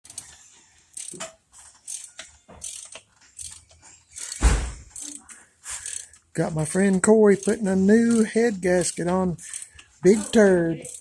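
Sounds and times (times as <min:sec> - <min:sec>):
ratchet wrench clicking: 0:00.1 - 0:05.2, 0:05.8 - 0:06.3, 0:07.2 - 0:09.9, 0:10.8 - 0:11.0
heavy thump: 0:04.4 - 0:04.8.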